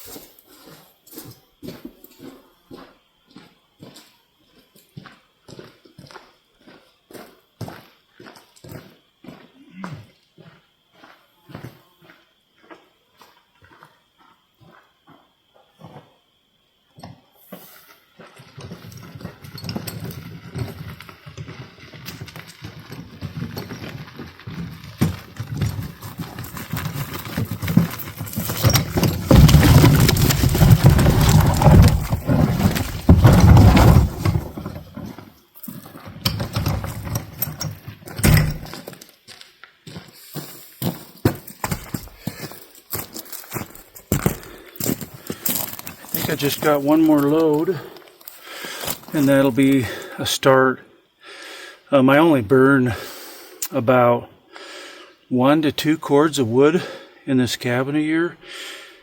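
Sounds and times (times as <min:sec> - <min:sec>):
footsteps on rough ground: 0:00.0 - 0:16.1, 0:17.5 - 0:50.2
wheelbarrow rolling and rattling: 0:18.2 - 0:39.2, 0:40.3 - 0:50.2.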